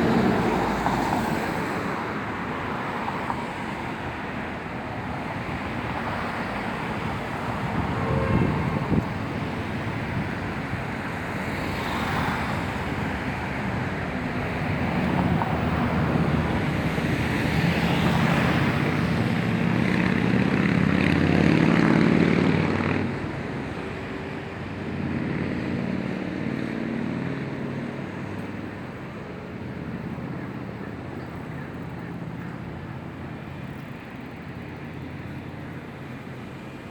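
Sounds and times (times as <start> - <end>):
engine drone: 7.0 - 9.9.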